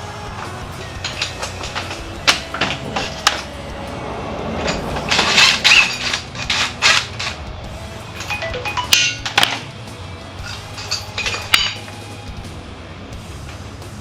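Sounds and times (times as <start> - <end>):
metal tools clinking: 0.4 - 3.6, 4.6 - 9.8, 10.4 - 12.4.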